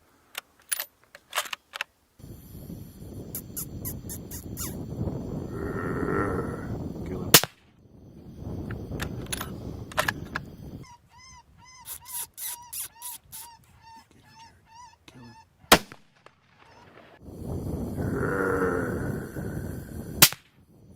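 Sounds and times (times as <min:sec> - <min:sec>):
animal yelping: 0:03.4 - 0:04.8, 0:10.8 - 0:17.2.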